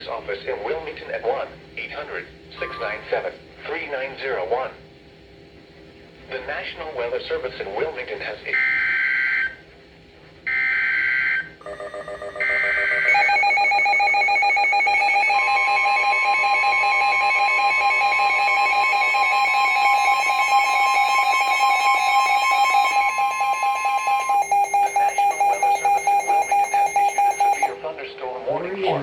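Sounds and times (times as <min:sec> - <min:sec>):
pulsing electronic alarm: 0:10.5 - 0:27.8
steady warning tone: 0:10.5 - 0:29.0
screeching data burst: 0:11.8 - 0:27.8.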